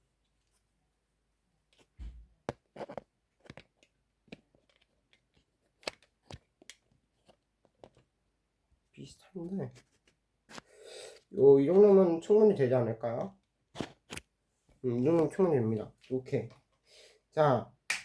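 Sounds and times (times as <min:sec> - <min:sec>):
plastic parts clicking and knocking: 0:01.7 - 0:08.1.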